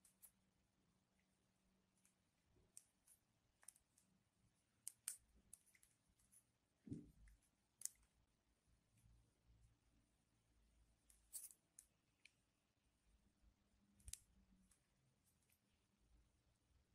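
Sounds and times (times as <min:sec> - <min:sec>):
soft low thud: 0:06.9 - 0:07.2.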